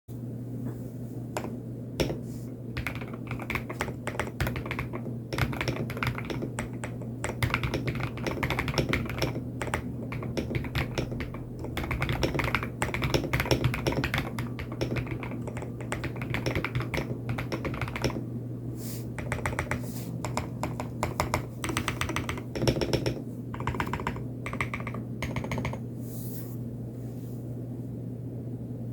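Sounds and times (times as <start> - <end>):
steady low hum: 0.1 - 28.9
mechanical keyboard keystroke clacks: 2.8 - 18.2, 19.2 - 25.8.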